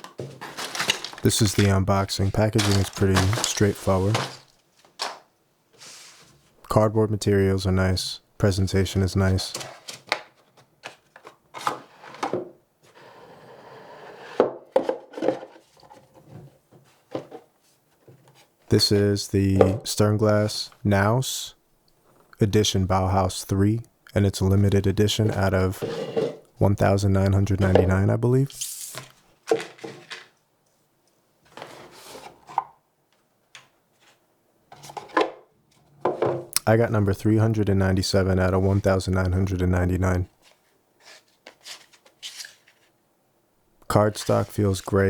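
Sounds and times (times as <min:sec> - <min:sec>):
cardboard rubbing and sliding: 0:00.0 - 0:04.5, 0:05.8 - 0:06.4, 0:25.8 - 0:26.4.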